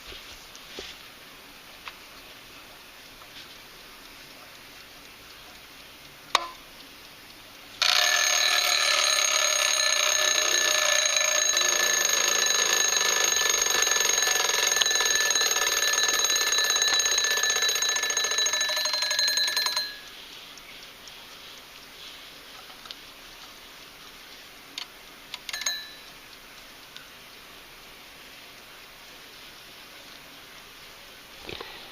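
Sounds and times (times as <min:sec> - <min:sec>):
clock ticking: 0:03.0 - 0:27.4
alarm clock bell ringing: 0:07.8 - 0:20.1, 0:25.5 - 0:26.1
alarm clock click: 0:07.8 - 0:20.1, 0:25.4 - 0:26.2.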